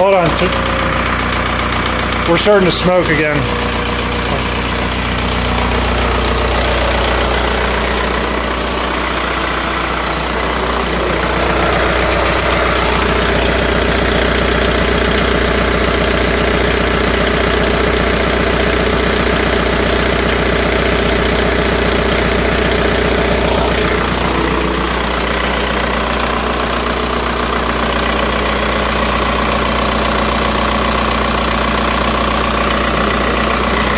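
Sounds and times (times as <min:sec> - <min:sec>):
diesel engine running: 0:00.0 - 0:33.9
thin steady whistle: 0:05.8 - 0:15.1.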